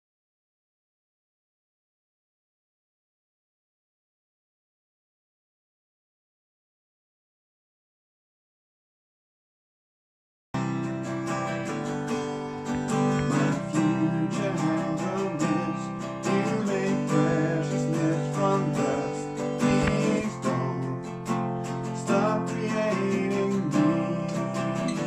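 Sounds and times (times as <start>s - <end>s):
worship song with strummed guitar: 10.6s - 25.0s.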